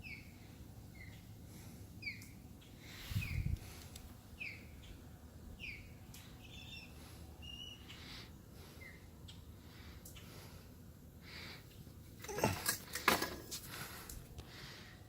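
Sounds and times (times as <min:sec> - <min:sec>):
high bird chirps: 0:02.0 - 0:02.4, 0:04.4 - 0:05.0, 0:05.6 - 0:08.0.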